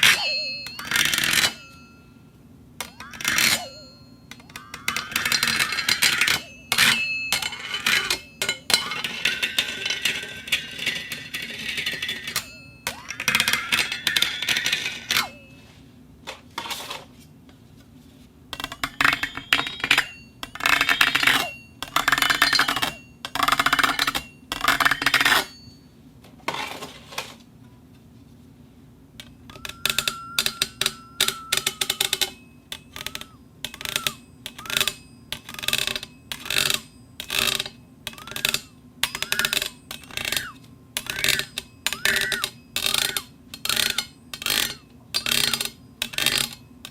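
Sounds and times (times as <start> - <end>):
brief ringing tone: 0.0 - 2.3, 2.9 - 7.4, 29.4 - 34.9.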